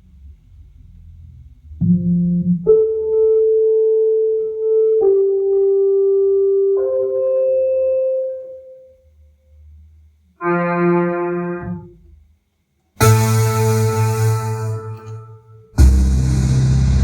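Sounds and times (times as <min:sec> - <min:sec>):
electronic keyboard preset tones: 0:01.8 - 0:09.0, 0:13.0 - 0:17.0.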